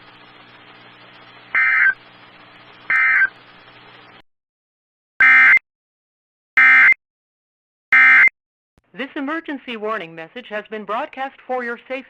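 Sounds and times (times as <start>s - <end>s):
receiver hiss: 0.0s - 4.2s
shrill two-tone warbling data bursts: 1.6s - 2.0s, 2.9s - 3.4s.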